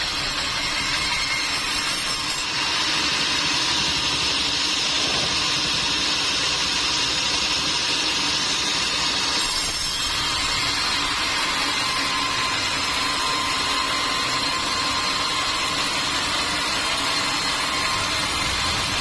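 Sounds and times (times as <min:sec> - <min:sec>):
sawmill machinery running: 0:00.0 - 0:19.0.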